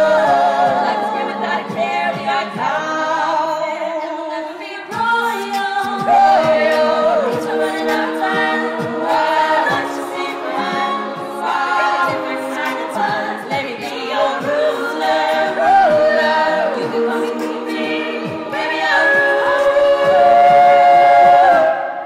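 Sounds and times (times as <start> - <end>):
women singing a cappella harmony: 0.0 - 22.0.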